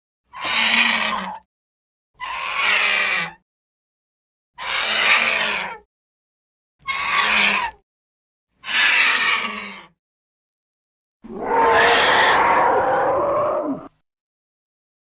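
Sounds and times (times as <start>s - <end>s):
rough screeching calls: 11.3s - 13.9s.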